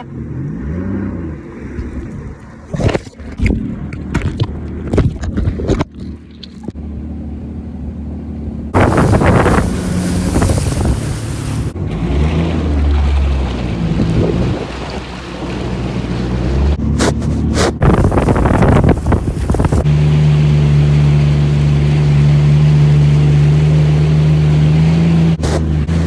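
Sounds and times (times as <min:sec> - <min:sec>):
jet ski engine: 0:06.8 - 0:16.8, 0:17.8 - 0:26.0
loud rushing noise: 0:08.8 - 0:11.8, 0:17.8 - 0:19.8
wind buffeting microphone: 0:08.8 - 0:11.8, 0:17.8 - 0:19.9.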